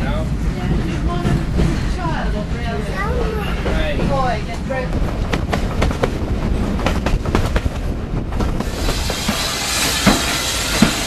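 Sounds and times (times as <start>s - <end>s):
wheels clicking over rail joints: 0.0s - 11.0s
steam hissing: 8.6s - 11.0s.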